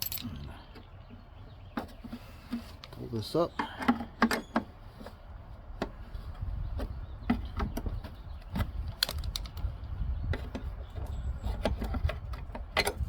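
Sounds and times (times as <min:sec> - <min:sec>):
clicks of handling parts: 0:00.0 - 0:00.4, 0:08.9 - 0:09.7.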